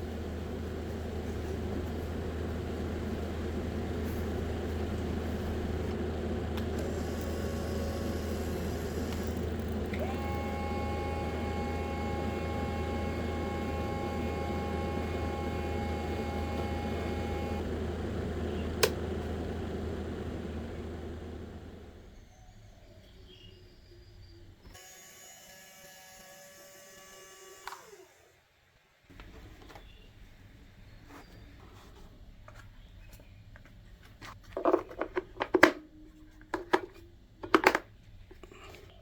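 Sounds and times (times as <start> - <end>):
motor whine: 0.0 - 23.1, 24.6 - 28.4
small motor humming: 3.6 - 22.9, 24.7 - 28.4.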